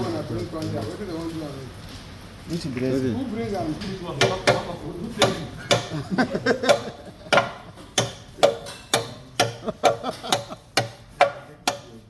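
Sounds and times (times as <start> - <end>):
tool striking metal part: 4.2 - 6.0, 6.6 - 12.0.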